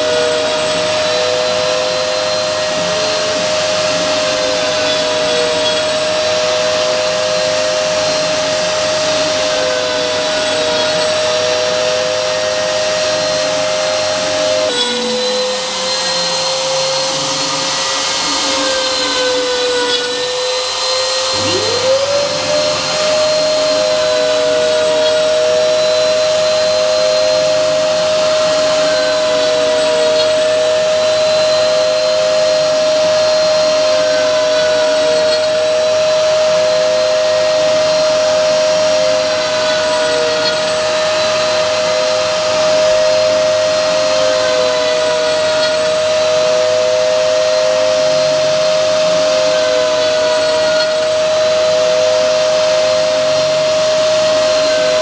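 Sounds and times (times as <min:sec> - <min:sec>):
spindle motor high whine: 0:00.0 - 0:55.0
wavering tone: 0:00.0 - 0:55.0.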